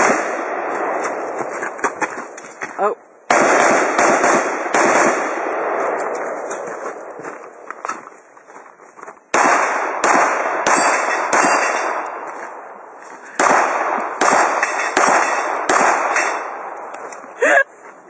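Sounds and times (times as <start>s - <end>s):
rifle shots echoing: 0.0s - 1.4s, 3.3s - 7.2s, 9.3s - 16.9s.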